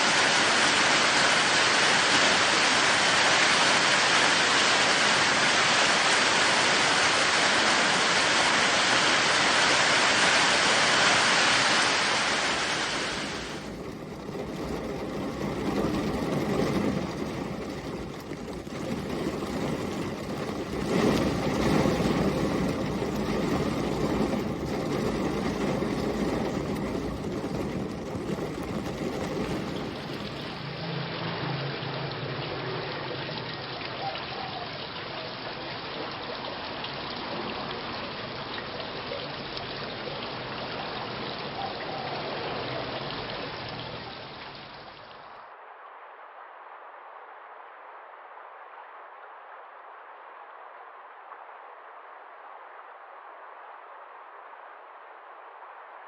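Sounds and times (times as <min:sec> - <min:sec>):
heavy rain falling: 0:00.0 - 0:33.7
stream flowing: 0:00.0 - 0:56.0.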